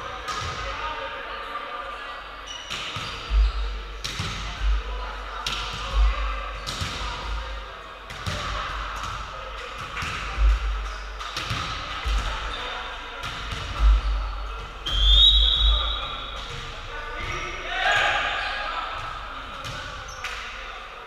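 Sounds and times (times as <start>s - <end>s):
volleyball hits: 5.4s - 20.6s
referee's whistle: 14.8s - 16.3s.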